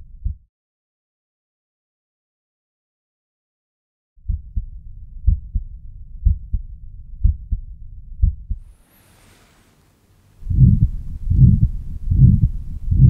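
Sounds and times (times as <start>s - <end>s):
heartbeat through stethoscope: 0.1s - 0.4s, 4.2s - 8.7s, 10.4s - 13.0s
heart murmur: 4.3s - 6.6s, 7.2s - 7.6s, 8.2s - 8.7s, 10.4s - 13.0s.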